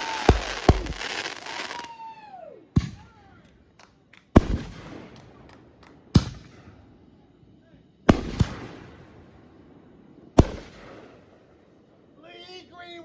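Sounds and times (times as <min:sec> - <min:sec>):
loud firework booms: 0:00.0 - 0:01.8, 0:04.3 - 0:06.8, 0:08.1 - 0:11.6
small firework pops: 0:00.0 - 0:02.0, 0:02.8 - 0:06.8
fireworks crackling fizz: 0:00.0 - 0:02.1
firework whistle falling in pitch: 0:00.0 - 0:02.6.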